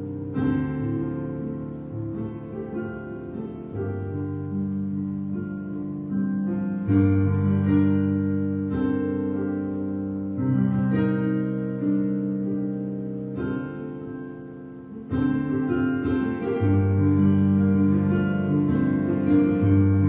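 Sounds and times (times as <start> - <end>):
slow piano-like chords: 0.0 - 20.0.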